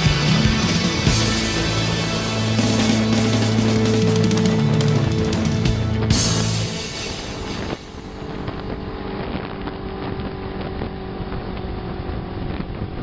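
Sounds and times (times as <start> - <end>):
motorcycle engine running: 0.0 - 13.0
wind rushing over microphone: 4.3 - 13.0.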